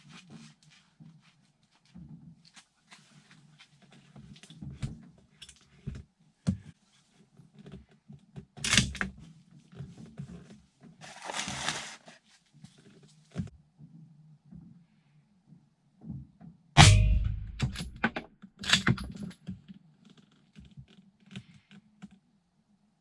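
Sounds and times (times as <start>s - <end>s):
rustling scrape: 11.0s - 13.3s
handling clicks and knocks: 16.8s - 19.5s.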